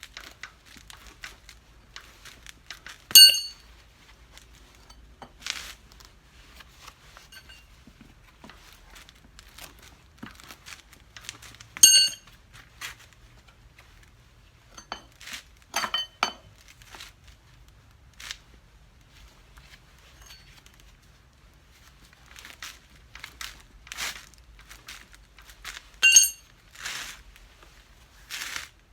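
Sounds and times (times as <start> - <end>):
handling and rustling noises: 0.0 - 28.9
metal hand tools clinking: 3.2 - 3.6, 7.3 - 7.6, 11.8 - 12.3, 14.8 - 15.1, 15.7 - 16.5, 20.2 - 20.5, 26.0 - 26.5.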